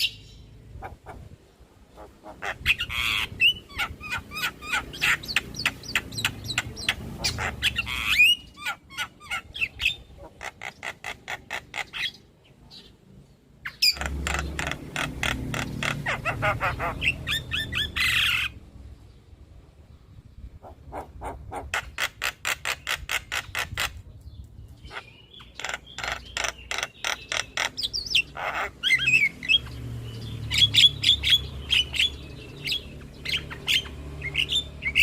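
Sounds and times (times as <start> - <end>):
myna calling with clicks and squawks: 0.0 - 12.9, 13.6 - 18.6, 20.6 - 29.8.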